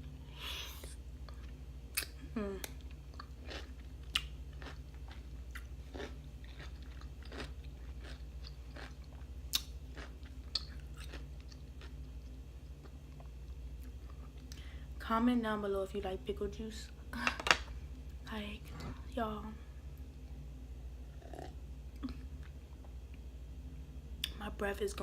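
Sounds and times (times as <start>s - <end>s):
person chewing crunchy food: 0.3s - 14.6s.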